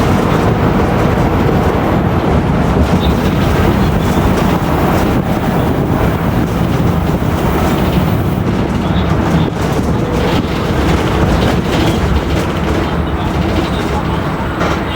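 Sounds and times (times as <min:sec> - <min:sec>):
differential whine: 0:00.0 - 0:10.4
bus rumbling on road: 0:00.0 - 0:14.9.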